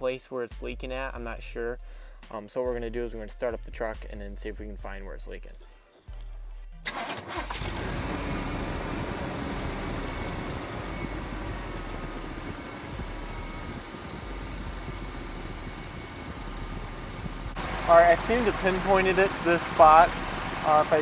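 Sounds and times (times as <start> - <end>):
exhaust leaking: 6.9 - 21.0
pickup engine idling: 7.3 - 21.0.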